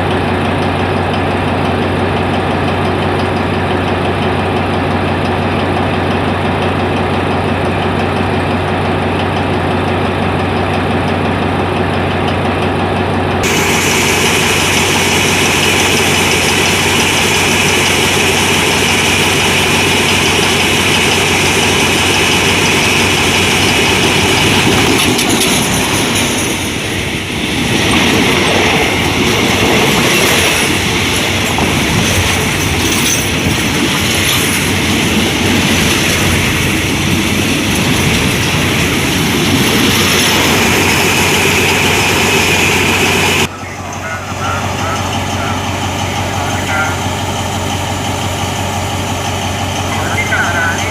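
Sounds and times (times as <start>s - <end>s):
diesel locomotive engine humming: 0.0s - 50.9s
loud hiss: 13.4s - 19.8s.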